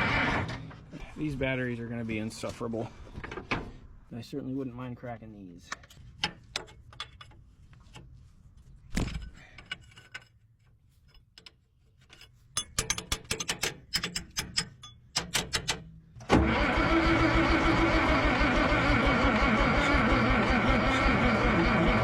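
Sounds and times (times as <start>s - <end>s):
diesel engine cranking: 0.0s - 0.8s, 13.5s - 22.0s
metal clicks and knocks: 5.7s - 8.1s, 9.0s - 16.3s.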